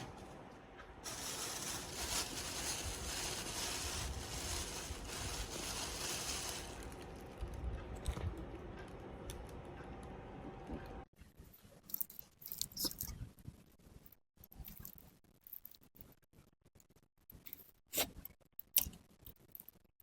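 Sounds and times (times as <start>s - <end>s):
chewing and crunching food: 1.2s - 9.8s.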